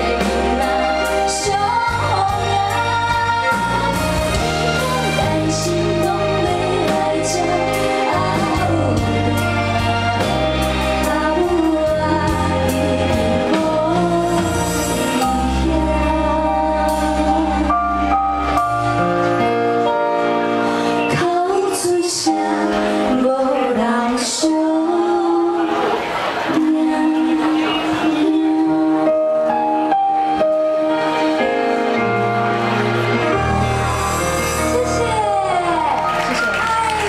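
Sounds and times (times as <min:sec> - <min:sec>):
female duo singing: 0:00.0 - 0:18.0, 0:21.0 - 0:29.8
live band playing: 0:00.0 - 0:37.0.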